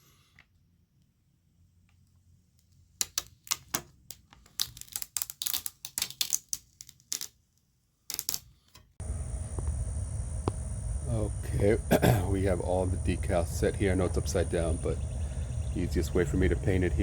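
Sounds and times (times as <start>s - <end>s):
crickets chirring: 9.0s - 17.0s
steady hum: 9.0s - 17.0s.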